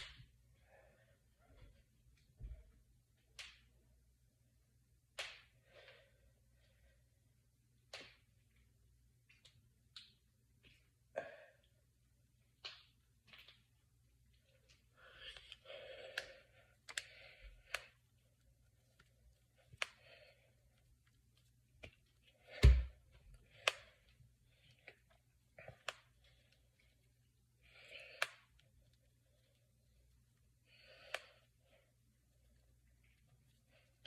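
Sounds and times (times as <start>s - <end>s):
knuckles cracking: 14.6s - 20.2s, 23.5s - 24.0s, 24.6s - 26.9s, 27.8s - 28.7s.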